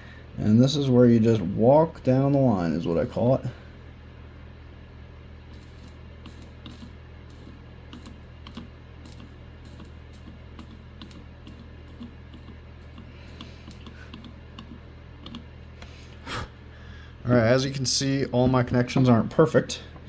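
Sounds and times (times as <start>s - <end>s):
steady low hum: 0.0s - 20.0s
soldering iron clicks and taps: 5.6s - 15.5s.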